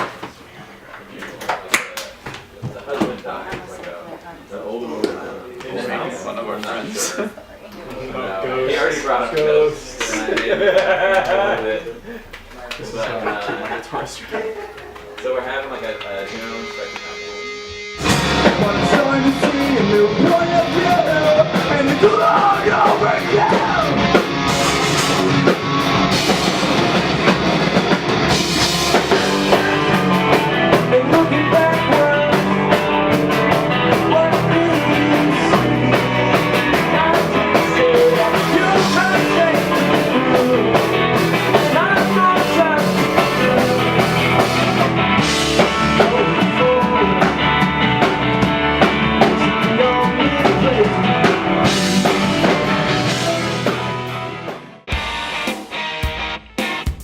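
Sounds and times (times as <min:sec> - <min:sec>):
drum kit: 0:08.0 - 0:57.0
electric guitar: 0:14.5 - 0:57.0
person singing: 0:18.0 - 0:25.4, 0:28.9 - 0:48.2, 0:48.8 - 0:54.1.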